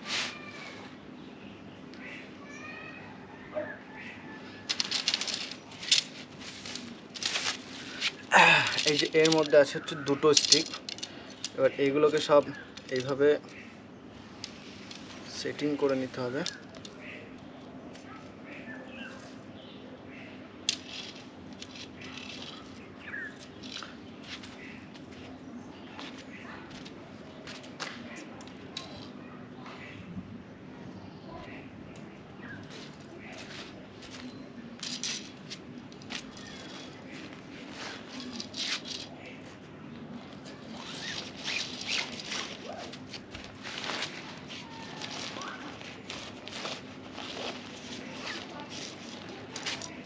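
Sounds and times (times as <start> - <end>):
tent fabric and poles rustling: 0.0 - 1.0, 4.6 - 19.8, 20.6 - 29.3, 32.4 - 50.0
tent fabric rustling: 4.8 - 8.7, 36.1 - 39.1, 40.3 - 50.0.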